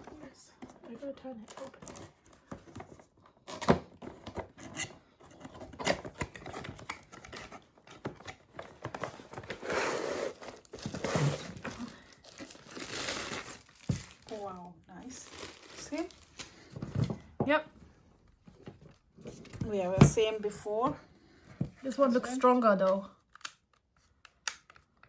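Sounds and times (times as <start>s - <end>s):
packaging tearing and crinkling: 9.8s - 16.6s.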